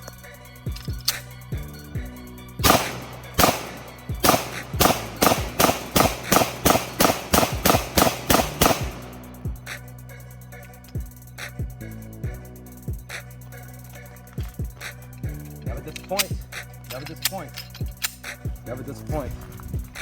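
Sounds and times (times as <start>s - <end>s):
hip-hop music: 0.0s - 20.0s
pistol shots: 2.6s - 9.4s.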